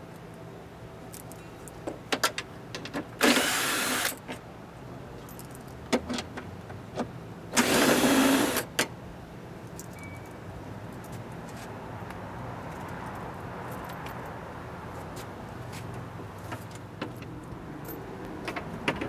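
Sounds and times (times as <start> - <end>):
power driver spinning bolts: 3.2 - 4.3.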